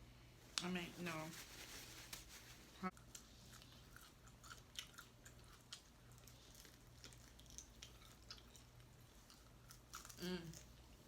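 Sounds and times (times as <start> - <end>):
low steady hum: 0.0 - 11.0
person chewing: 2.9 - 11.0.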